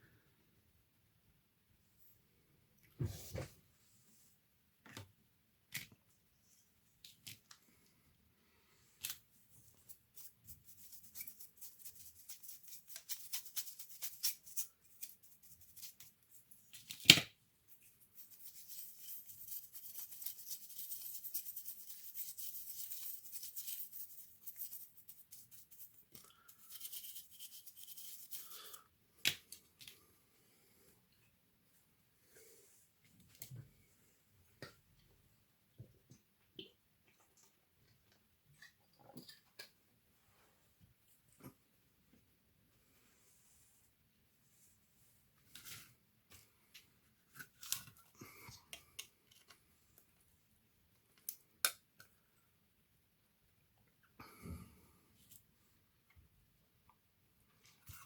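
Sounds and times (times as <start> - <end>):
scratchy rubbing or brushing: 9.6 - 16.6, 17.7 - 28.8.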